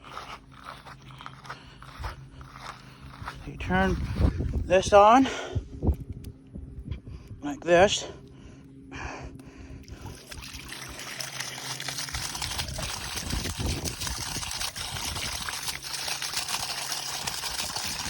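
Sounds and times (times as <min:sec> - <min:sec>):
water running and splashing: 0:09.9 - 0:18.0.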